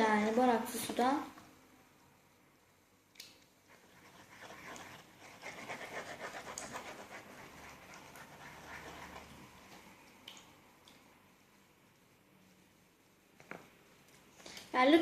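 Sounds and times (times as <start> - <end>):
wet squelching of stirred slime: 3.1 - 11.4.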